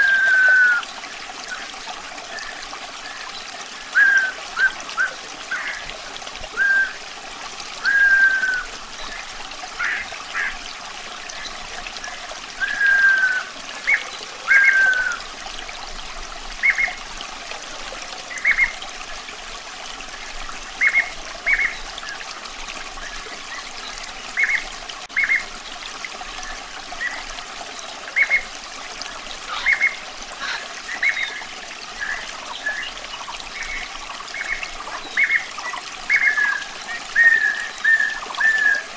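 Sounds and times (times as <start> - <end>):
bird whistling: 0.0 - 0.9, 4.0 - 5.9, 6.6 - 7.0, 7.8 - 9.2, 12.6 - 15.2, 36.1 - 38.9
water trickling: 0.0 - 38.9.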